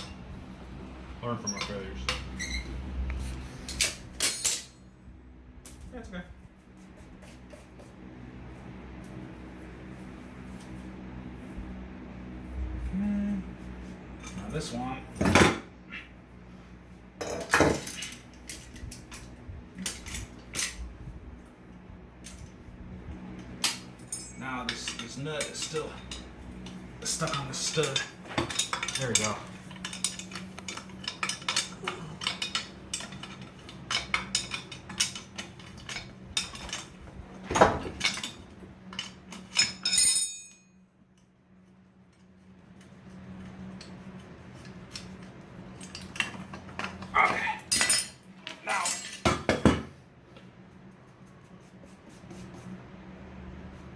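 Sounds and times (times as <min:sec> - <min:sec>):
metal hand tools clinking: 0:23.6 - 0:36.9, 0:38.0 - 0:40.7, 0:45.8 - 0:49.4.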